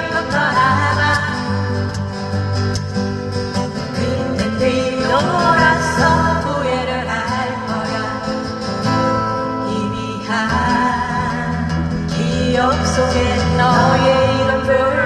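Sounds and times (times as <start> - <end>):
song over sound system: 3.8 - 15.0.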